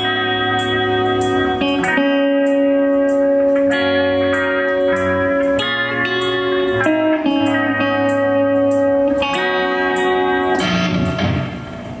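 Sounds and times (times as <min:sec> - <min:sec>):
live band playing held chords: 0:00.0 - 0:12.0.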